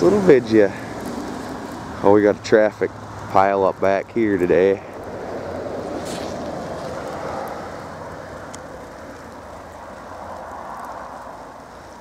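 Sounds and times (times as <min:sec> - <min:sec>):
car engine and road noise: 0:00.0 - 0:12.0
faint clicks: 0:08.4 - 0:09.6.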